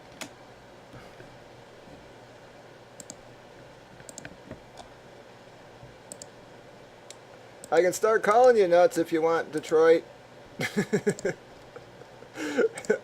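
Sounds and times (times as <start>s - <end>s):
computer mouse and keyboard clicks: 3.0s - 3.2s, 4.0s - 4.9s, 6.1s - 6.3s.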